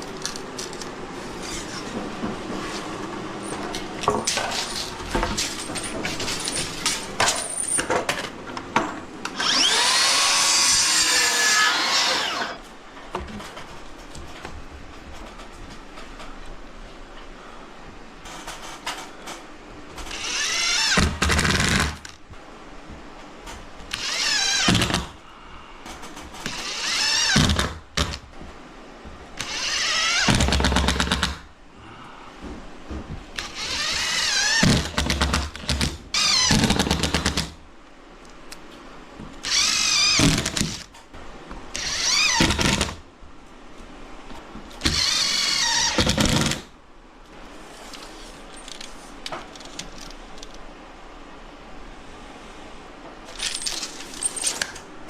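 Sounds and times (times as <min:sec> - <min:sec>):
power drill driving screws: 0:09.4 - 0:12.6, 0:20.0 - 0:22.1, 0:23.9 - 0:25.2, 0:26.4 - 0:28.2, 0:29.4 - 0:31.4, 0:33.4 - 0:37.5, 0:39.4 - 0:40.9, 0:41.8 - 0:43.0, 0:44.8 - 0:46.7.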